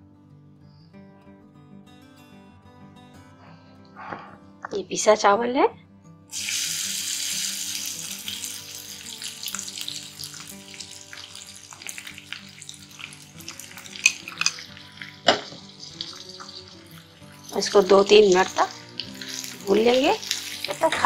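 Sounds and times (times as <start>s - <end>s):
rice sizzling in ghee in a pan: 6.3s - 21.0s.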